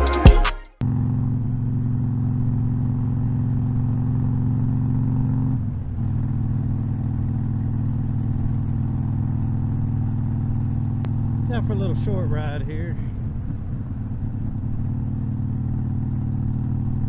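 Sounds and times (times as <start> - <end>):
intro music: 0.0 - 0.8
motorcycle engine running steadily: 0.8 - 17.0.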